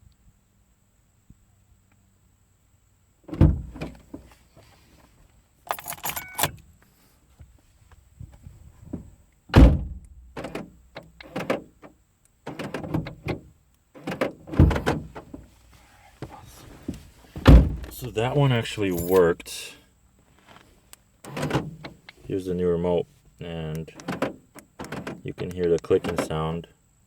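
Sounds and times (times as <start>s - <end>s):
car doors shutting: 3.3s - 4.9s, 8.8s - 15.6s, 16.2s - 19.3s, 20.4s - 22.4s, 23.7s - 26.4s
car keys jingling: 5.6s - 6.6s, 17.6s - 19.7s, 23.8s - 26.4s.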